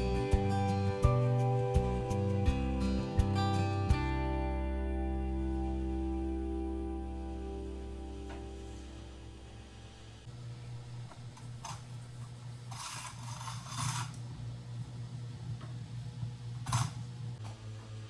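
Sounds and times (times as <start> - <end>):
steady low hum: 0.0 - 18.0
scraping rub: 12.7 - 14.2.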